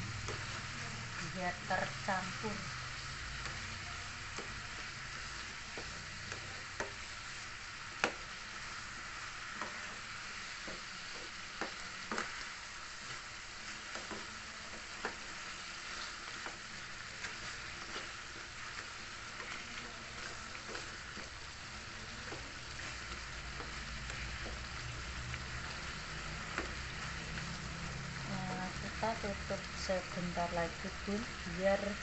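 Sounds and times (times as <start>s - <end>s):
chicken sizzling in a pan: 0.0s - 32.0s.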